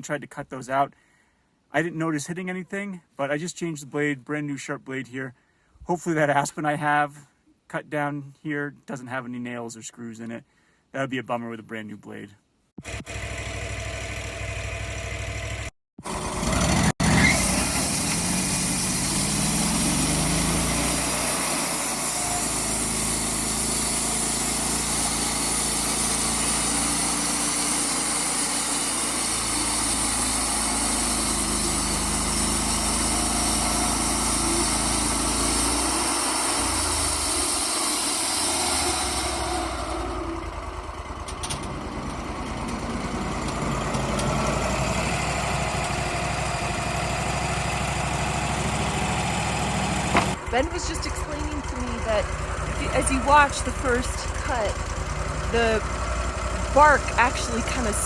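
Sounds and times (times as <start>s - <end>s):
band sawmill cutting log: 12.8s - 58.0s
sawmill engine running: 12.8s - 58.0s.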